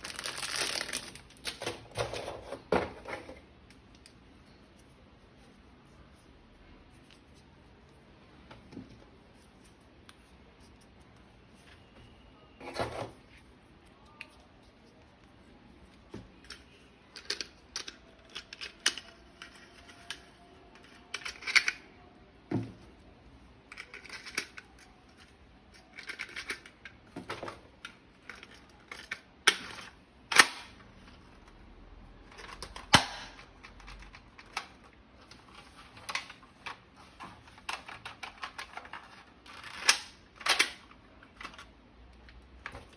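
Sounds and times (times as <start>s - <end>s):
packaging rustling: 0.0s - 1.9s.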